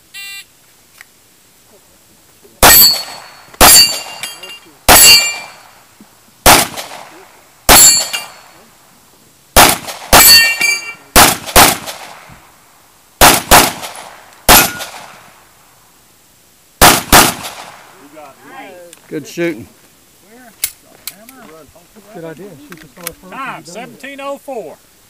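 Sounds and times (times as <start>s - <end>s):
pistol shots: 2.6s - 4.2s, 4.9s - 5.6s, 6.4s - 8.4s, 9.6s - 12.3s, 13.2s - 15.2s, 16.8s - 17.9s
bullets clanging on steel targets: 2.6s - 5.7s, 7.7s - 8.6s, 10.2s - 11.1s.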